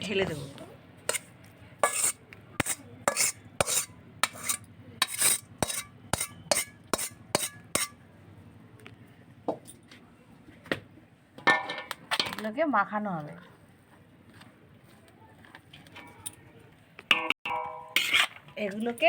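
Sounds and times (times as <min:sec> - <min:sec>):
metal spoon knocking on a pan: 0:01.8 - 0:08.0, 0:17.1 - 0:18.1.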